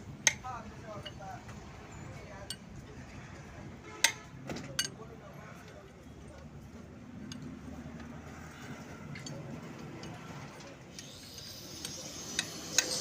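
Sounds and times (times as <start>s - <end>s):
sharp metallic clicks: 7.2s - 13.0s.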